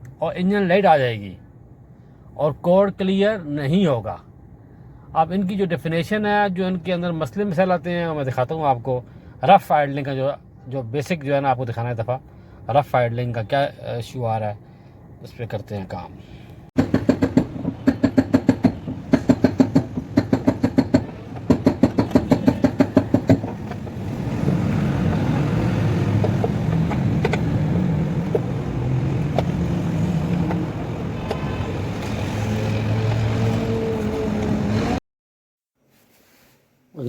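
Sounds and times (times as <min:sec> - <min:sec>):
car engine rough idling: 0:16.2 - 0:29.6.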